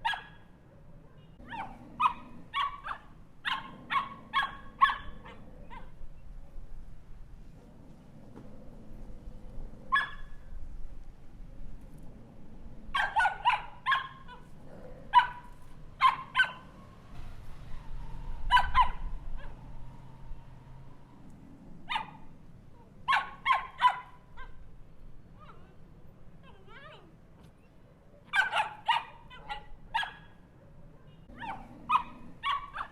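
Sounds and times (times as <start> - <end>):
small dog yapping: 0.0 - 0.4, 1.4 - 6.0, 9.9 - 10.4, 12.9 - 16.7, 18.5 - 19.7, 21.9 - 22.2, 22.8 - 24.6, 28.3 - 30.3, 31.1 - 32.9.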